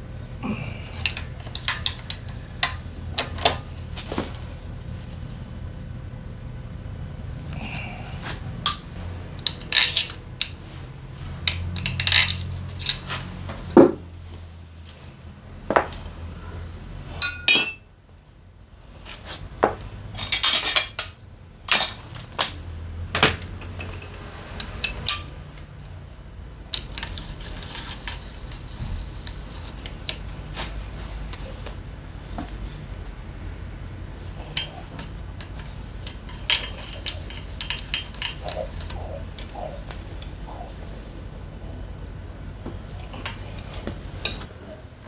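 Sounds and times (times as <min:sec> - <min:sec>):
steady low hum: 0:00.0 - 0:45.0
metal tools clinking and knocking: 0:01.0 - 0:04.6, 0:08.6 - 0:13.2, 0:15.7 - 0:16.2, 0:17.2 - 0:17.9, 0:19.6 - 0:26.1, 0:26.7 - 0:31.8, 0:34.2 - 0:41.9, 0:42.6 - 0:44.8.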